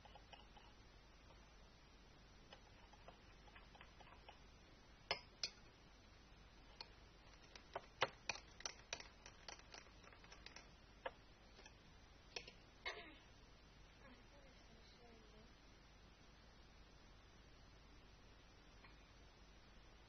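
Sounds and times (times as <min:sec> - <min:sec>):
faint hiss: 0:00.0 - 0:20.0
small clicks and taps: 0:02.5 - 0:04.4, 0:06.7 - 0:12.6.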